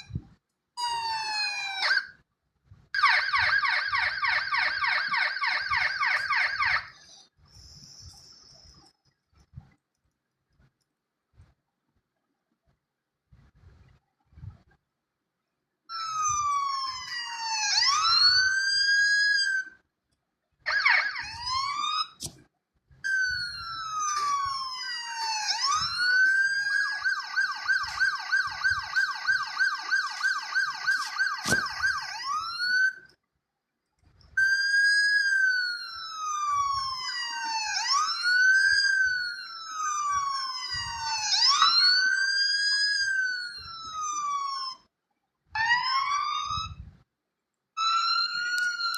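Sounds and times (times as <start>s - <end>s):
emergency vehicle siren: 0.0s - 2.3s, 2.9s - 8.9s, 15.9s - 19.9s, 20.6s - 22.3s, 22.9s - 33.2s, 34.3s - 47.0s, 47.8s - 48.9s.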